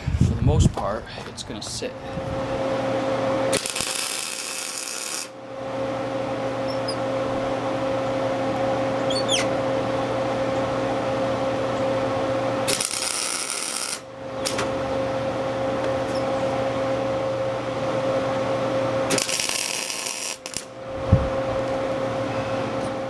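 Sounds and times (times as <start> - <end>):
machine hum: 0.0 - 23.0
power tool working metal: 3.5 - 5.4, 12.6 - 14.6, 19.1 - 20.7.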